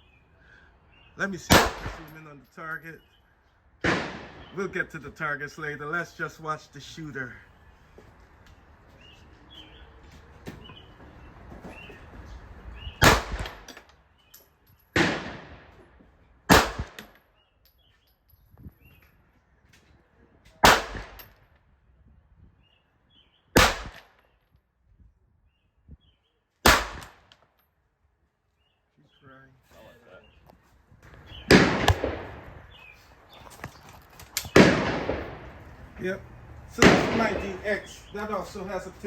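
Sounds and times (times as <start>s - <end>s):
handgun shots with echo: 1.5s - 2.2s, 13.0s - 13.8s, 16.5s - 17.2s, 20.6s - 21.4s, 23.6s - 24.3s, 26.6s - 27.4s, 31.5s - 32.5s, 34.4s - 35.6s, 36.8s - 37.6s.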